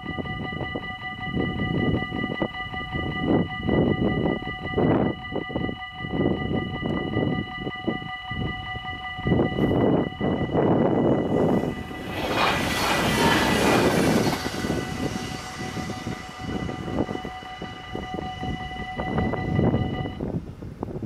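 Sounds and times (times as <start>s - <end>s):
rumbling and rushing noise: 9.8s - 20.2s
horn sounding a chord: 10.3s - 20.2s.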